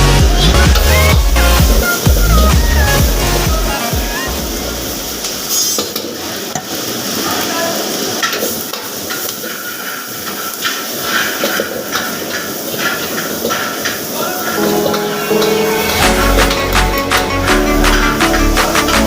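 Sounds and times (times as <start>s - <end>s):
sizzling hiss: 0.0s - 19.0s
utensils clattering: 8.2s - 19.0s.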